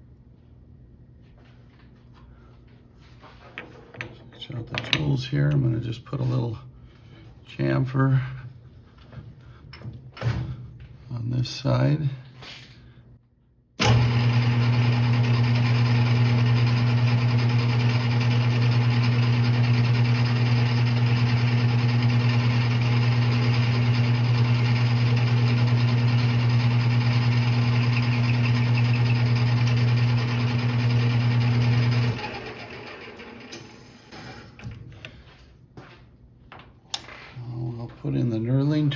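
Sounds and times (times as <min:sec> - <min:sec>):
metal lathe running: 0:13.8 - 0:33.7.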